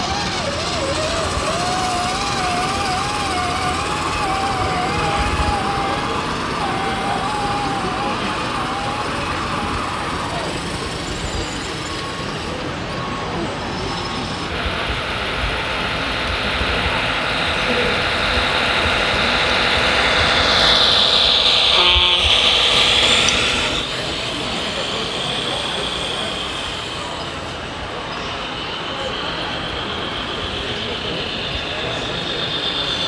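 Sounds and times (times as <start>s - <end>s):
background voices: 0.0s - 11.8s
model truck motor whine: 0.0s - 33.0s.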